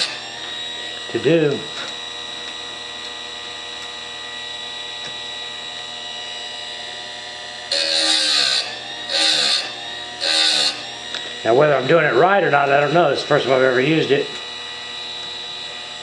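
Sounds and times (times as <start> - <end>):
grinding wheel grinding chain: 0.0 - 1.2, 7.7 - 13.5
sharpener motor humming: 0.0 - 16.0.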